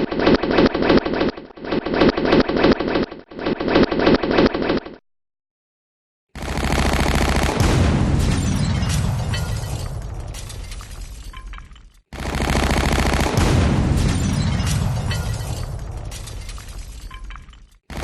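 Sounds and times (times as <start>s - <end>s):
machine-gun fire: 6.4s - 10.2s, 12.2s - 16.3s.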